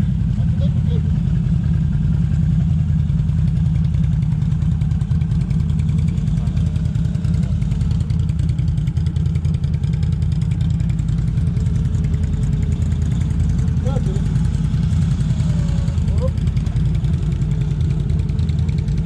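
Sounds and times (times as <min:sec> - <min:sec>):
atv engine running: 0:00.0 - 0:19.0.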